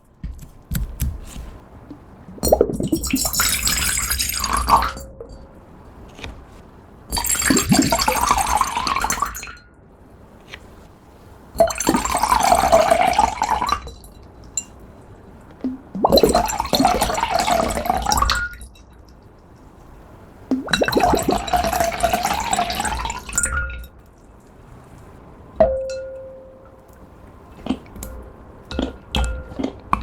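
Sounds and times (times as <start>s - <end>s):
liquid pouring into container: 2.3s - 5.0s, 7.1s - 9.4s, 11.6s - 14.0s, 15.6s - 18.6s, 20.5s - 23.8s.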